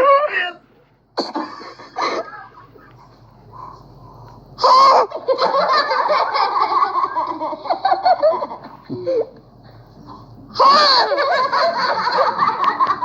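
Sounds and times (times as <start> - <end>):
high-pitched giggling laughter: 1.3 - 3.0, 4.6 - 9.3, 10.6 - 13.0.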